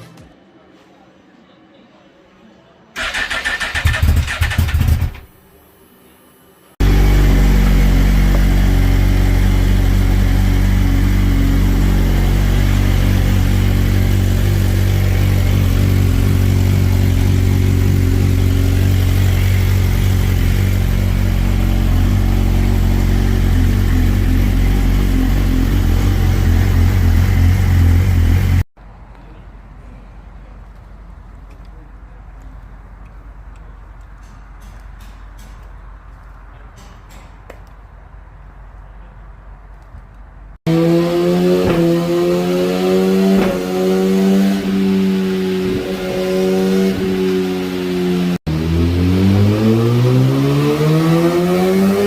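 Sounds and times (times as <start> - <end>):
motorcycle engine running loud: 6.8 - 28.6.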